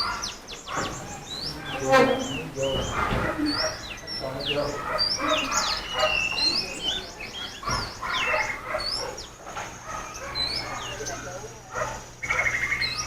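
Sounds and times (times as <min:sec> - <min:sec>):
small birds chirping and whistling: 0:00.0 - 0:13.0.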